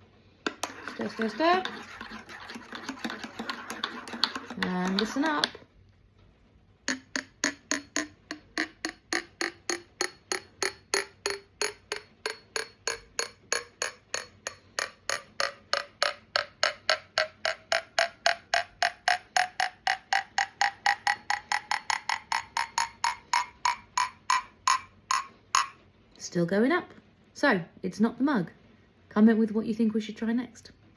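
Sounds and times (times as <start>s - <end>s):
spoon tapping a mug: 0.5s - 5.6s, 6.9s - 25.8s.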